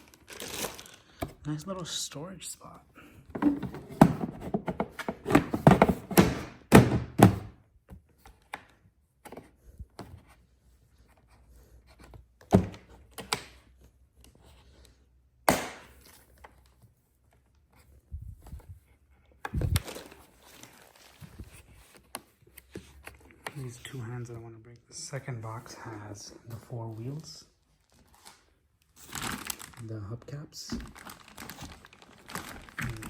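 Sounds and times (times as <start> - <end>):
plastic parts knocking and thunking: 3.3 - 10.3, 12.4 - 13.6, 30.7 - 33.0.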